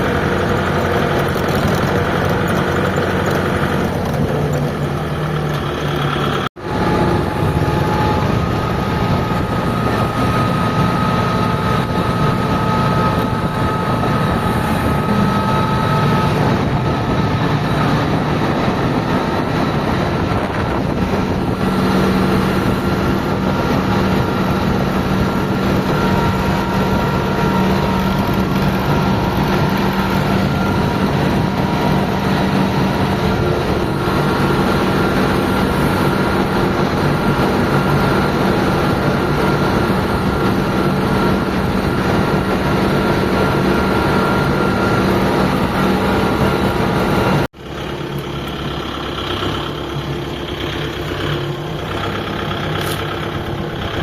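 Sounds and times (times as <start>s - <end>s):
trolley rattling: 0.0s - 7.7s
tractor diesel engine running: 0.0s - 54.0s.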